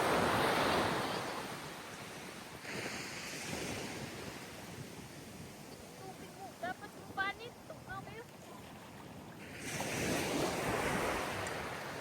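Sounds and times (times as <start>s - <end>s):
surf washing in: 0.0s - 8.3s, 8.9s - 12.0s
wind on microphone: 0.0s - 12.0s.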